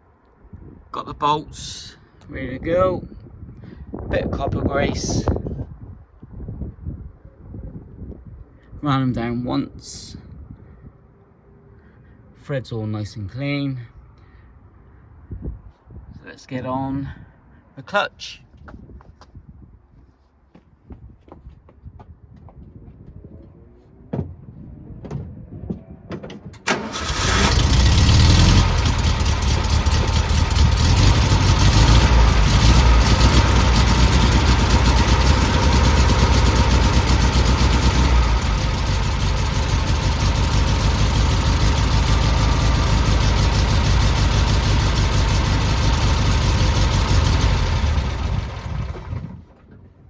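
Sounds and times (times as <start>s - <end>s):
car engine starting and running: 26.6s - 49.6s.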